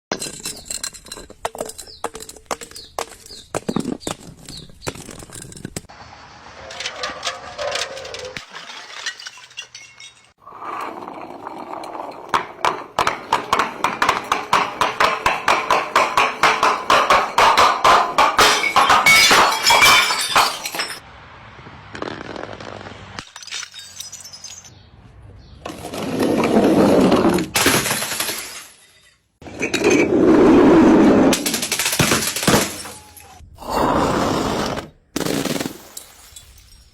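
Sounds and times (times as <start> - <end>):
breaking crashing noises: 5.9 - 10.4, 12.3 - 21.0, 27.1 - 29.0, 31.3 - 33.4
sharp knocks and clatters: 12.2 - 20.8.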